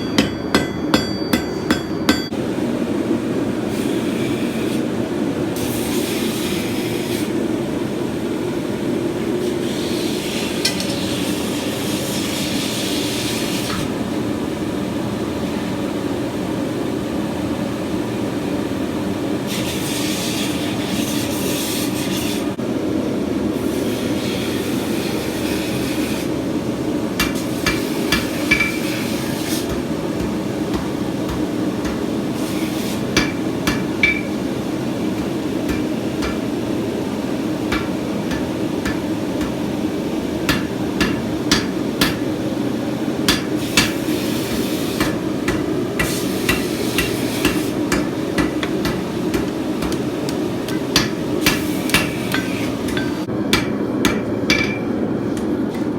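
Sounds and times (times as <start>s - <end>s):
hammer clinking on hot steel: 0.0s - 2.4s, 27.2s - 36.9s, 37.6s - 42.4s, 43.3s - 54.9s.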